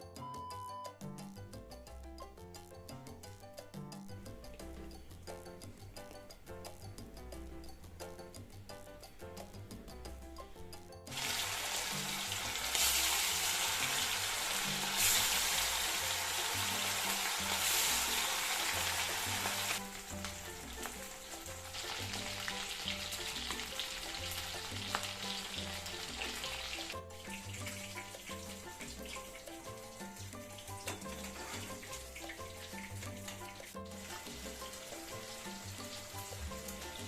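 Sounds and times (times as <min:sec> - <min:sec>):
food sizzling in a pan: 0:11.1 - 0:37.0.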